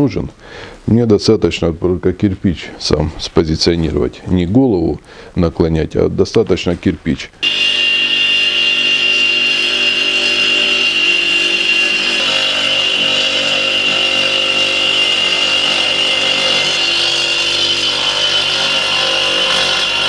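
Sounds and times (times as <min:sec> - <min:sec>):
electric saw cutting brick: 0:07.4 - 0:20.0.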